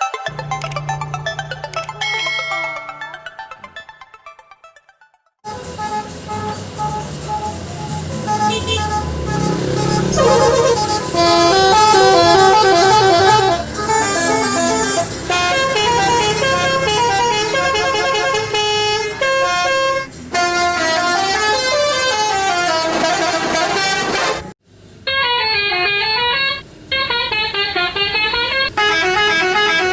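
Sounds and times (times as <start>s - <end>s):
horn playing fast melody: 5.4s - 24.5s, 25.1s - 29.9s.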